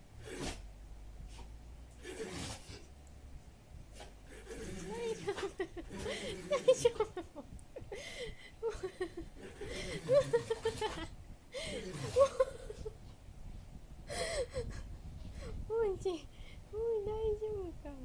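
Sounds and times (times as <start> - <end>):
person laughing: 4.5 - 13.0.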